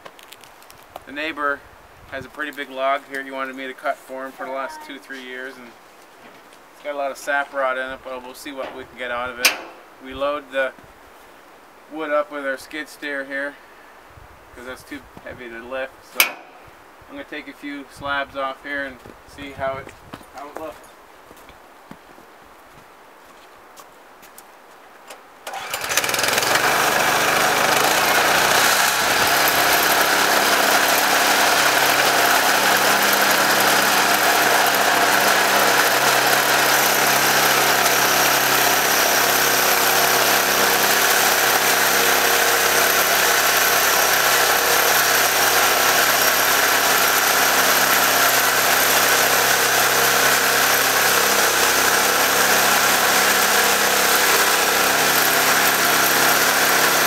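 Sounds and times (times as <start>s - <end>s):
small gasoline engine running: 25.5s - 57.0s.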